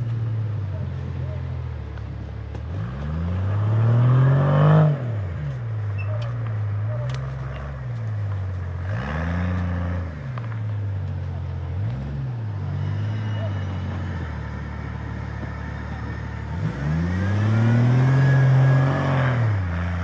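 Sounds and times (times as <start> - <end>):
engine revving in bursts: 16.5 - 20.0.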